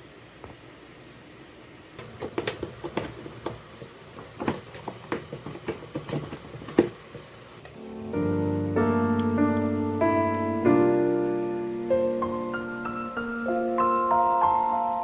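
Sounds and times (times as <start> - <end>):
objects being handled: 2.0 - 7.4.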